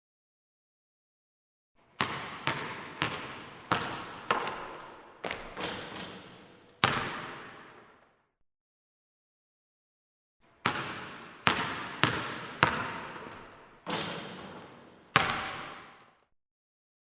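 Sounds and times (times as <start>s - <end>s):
ball bouncing on hard floor: 2.0s - 8.0s, 10.6s - 16.2s.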